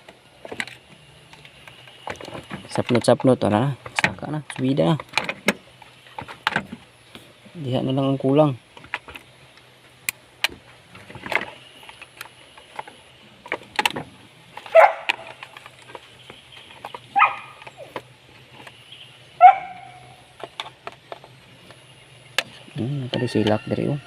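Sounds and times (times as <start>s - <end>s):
faint steady hum: 0.0s - 24.0s
dog barking: 14.7s - 15.2s, 17.2s - 17.6s, 19.4s - 20.1s.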